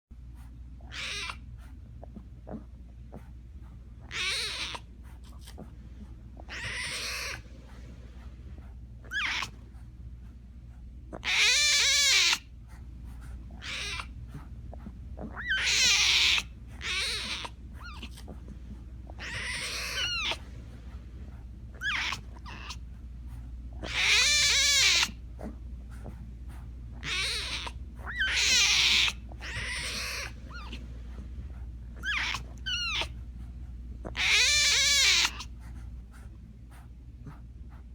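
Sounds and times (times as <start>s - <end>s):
tiger cub crying: 0.8s - 1.5s, 4.0s - 4.9s, 6.4s - 7.6s, 9.0s - 9.6s, 11.1s - 12.5s, 13.6s - 14.2s, 15.2s - 18.3s, 19.1s - 20.8s, 21.7s - 22.8s, 23.8s - 25.2s, 27.0s - 31.0s, 32.0s - 33.2s, 34.0s - 35.5s.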